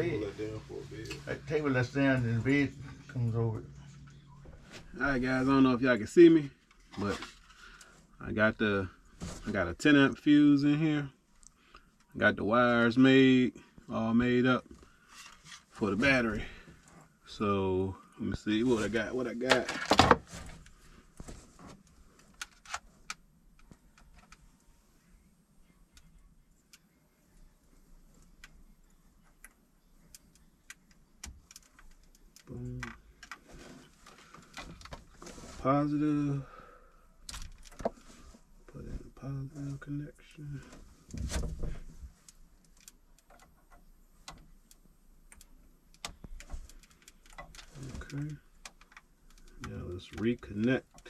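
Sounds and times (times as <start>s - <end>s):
clicks and taps handling wiring: 18.8s - 24.4s, 28.2s - 35.5s, 37.2s - 38.2s, 40.6s - 51.0s.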